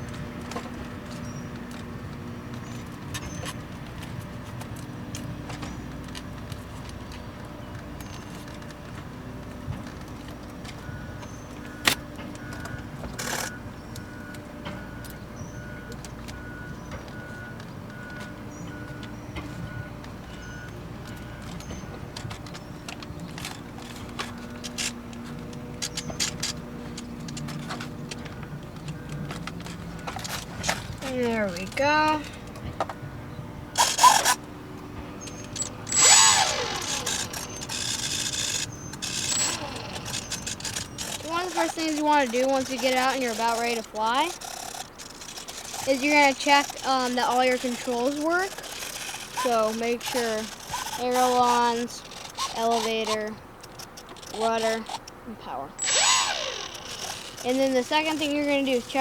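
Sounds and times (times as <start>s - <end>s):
small electric motor whirring: 11.2s - 13.6s, 33.7s - 55.2s, 55.8s - 59.0s
small birds chirping: 25.7s - 27.2s, 35.2s - 59.0s
sharp click: 35.2s - 55.2s.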